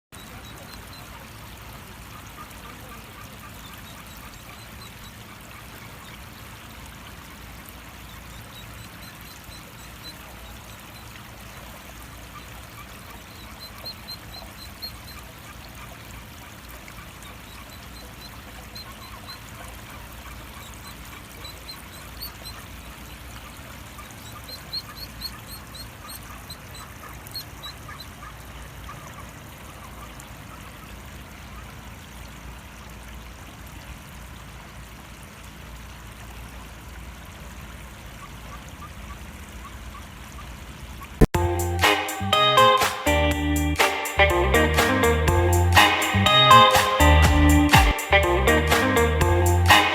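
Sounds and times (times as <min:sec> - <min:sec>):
ducklings peeping: 0:00.2 - 0:01.3, 0:02.1 - 0:06.5, 0:08.2 - 0:11.1, 0:12.2 - 0:15.9, 0:16.5 - 0:29.3, 0:41.3 - 0:49.9
water rushing from waterfall: 0:00.2 - 0:38.2.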